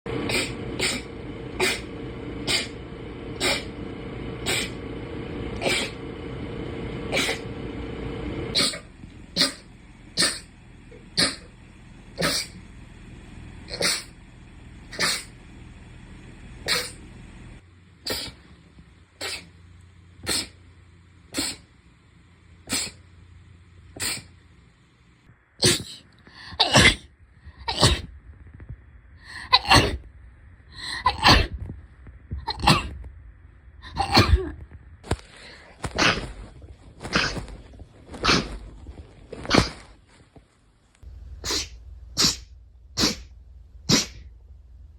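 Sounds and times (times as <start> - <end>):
background hum: 0.1 - 44.9
short sharp sneezes: 8.6 - 9.6, 10.2 - 10.5, 12.2 - 12.6, 13.7 - 14.1, 15.0 - 15.3, 16.7 - 17.0, 18.1 - 18.4, 19.2 - 19.5, 20.2 - 20.6, 21.3 - 21.7, 22.7 - 23.0, 24.0 - 24.3, 41.4 - 43.3, 43.9 - 44.3.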